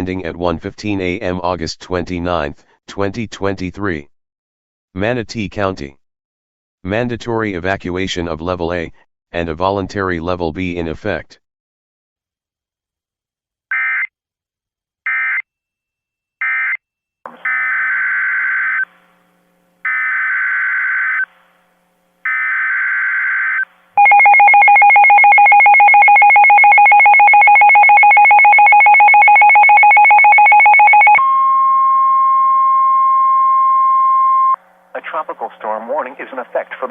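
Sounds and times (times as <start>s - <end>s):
steady alarm tone: 17.3s - 19.0s, 19.8s - 21.3s, 22.2s - 34.6s.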